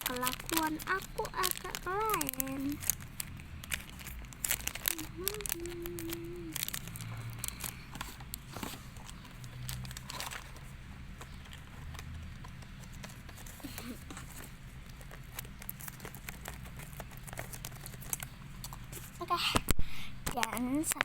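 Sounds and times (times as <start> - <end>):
paper crinkling and rustling: 0.0 - 19.6
person humming: 4.8 - 7.5.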